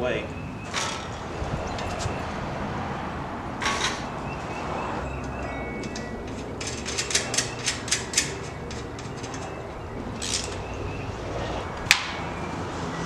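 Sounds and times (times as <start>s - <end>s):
wrench scraping: 3.6s - 4.1s, 5.4s - 10.7s
sharp metallic wrench clicks: 10.2s - 10.7s.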